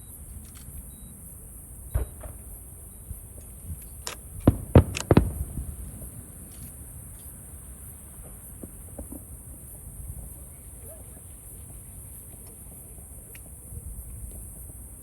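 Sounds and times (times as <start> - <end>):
fireworks bangs: 1.9 - 6.5, 8.1 - 10.4.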